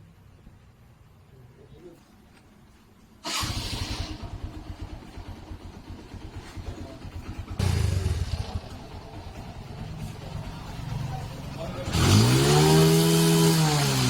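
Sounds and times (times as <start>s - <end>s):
motorcycle engine running: 3.4s - 14.0s.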